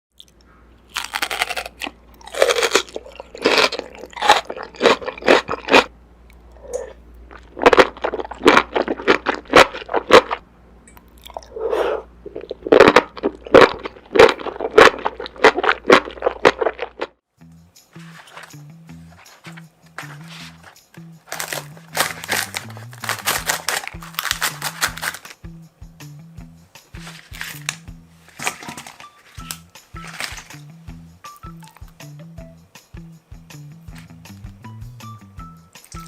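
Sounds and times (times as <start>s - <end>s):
crunching and chewing food: 0.2s - 10.4s, 11.0s - 17.2s, 20.0s - 25.4s, 26.9s - 30.6s.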